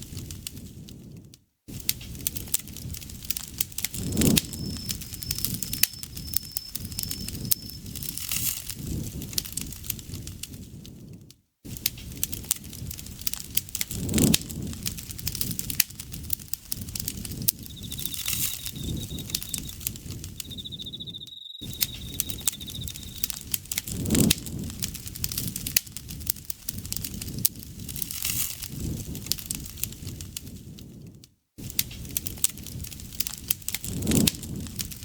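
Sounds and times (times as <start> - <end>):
campfire crackling and popping: 1.9 - 10.6, 11.8 - 30.6, 31.7 - 35.0
insect trilling: 4.0 - 8.0, 16.8 - 23.5.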